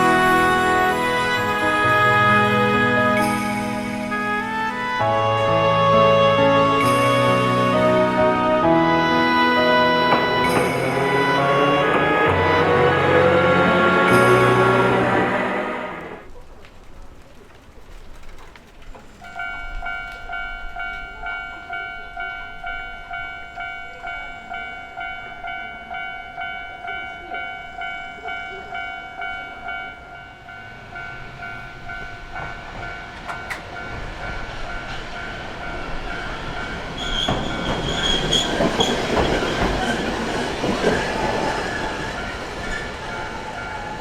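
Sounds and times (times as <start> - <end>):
level crossing bell ringing: 0.0 - 16.2
tram passing: 0.0 - 16.4, 18.9 - 44.0
wheel squeal: 36.3 - 44.0.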